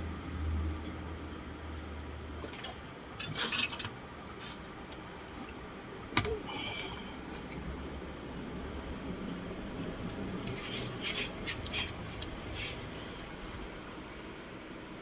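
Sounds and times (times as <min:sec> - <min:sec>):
small tools clicking and clattering: 0:02.5 - 0:04.0.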